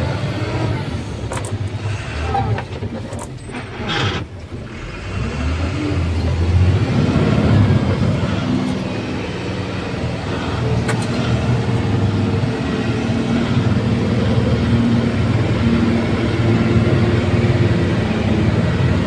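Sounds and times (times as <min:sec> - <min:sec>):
diesel machinery rumbling: 0:00.0 - 0:19.0.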